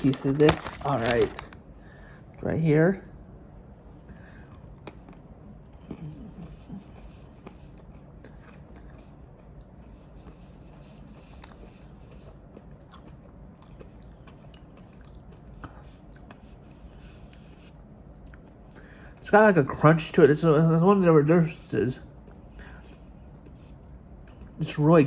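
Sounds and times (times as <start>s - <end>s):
person chewing chocolate: 0.0s - 1.7s, 4.0s - 19.2s, 22.0s - 24.6s
low murmur: 0.0s - 25.0s
low steady hum: 0.0s - 25.0s.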